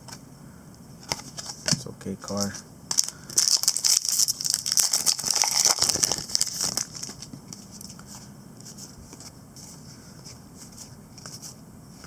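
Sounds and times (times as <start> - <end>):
foil wrapper crinkling and tearing: 2.3 - 7.3.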